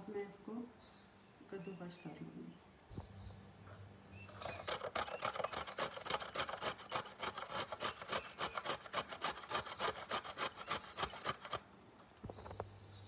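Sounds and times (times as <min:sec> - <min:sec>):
carrots rasping on grater: 0:04.3 - 0:11.6.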